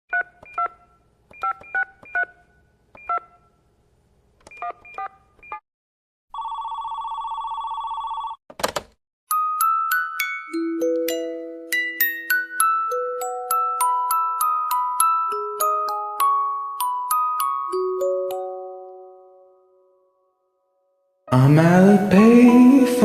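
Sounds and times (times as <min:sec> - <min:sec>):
keypad beeps: 0:00.1 - 0:02.4, 0:03.0 - 0:03.4, 0:04.4 - 0:05.6
telephone ringing tone: 0:06.3 - 0:08.4
glockenspiel-style music notes: 0:09.3 - 0:20.1.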